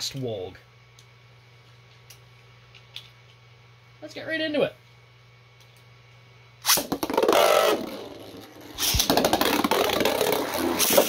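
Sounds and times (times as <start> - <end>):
spinning tops whirring: 6.6 - 11.0
spinning tops clattering: 6.7 - 11.0.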